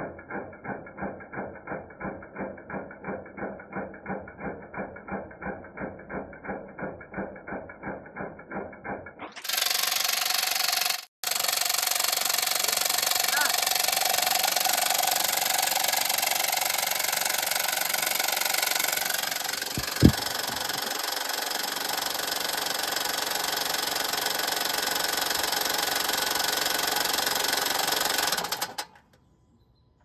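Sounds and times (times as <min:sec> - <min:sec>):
sharp thump: 0:19.8 - 0:20.9.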